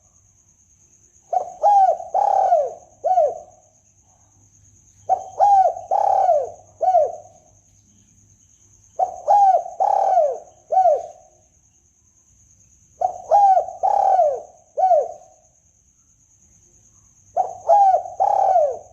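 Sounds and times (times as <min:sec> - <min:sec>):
dove cooing: 0:01.3 - 0:03.6, 0:05.0 - 0:07.5, 0:09.0 - 0:11.3, 0:13.0 - 0:15.4, 0:17.4 - 0:18.9.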